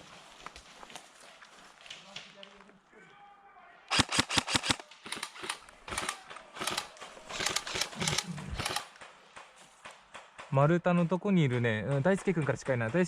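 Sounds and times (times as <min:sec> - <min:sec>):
airsoft gun firing: 0:03.9 - 0:09.0.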